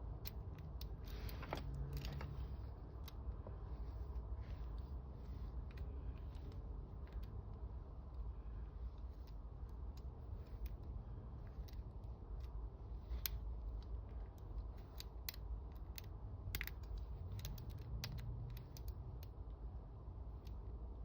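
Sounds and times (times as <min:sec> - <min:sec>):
low steady hum: 0:00.0 - 0:21.0
lock pick clicking and scraping: 0:14.4 - 0:19.3.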